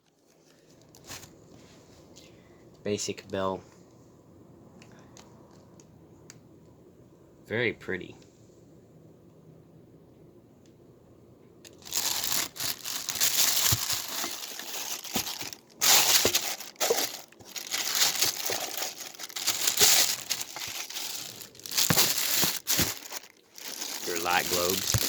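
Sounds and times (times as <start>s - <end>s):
packaging crumpling and rustling: 11.7s - 25.0s.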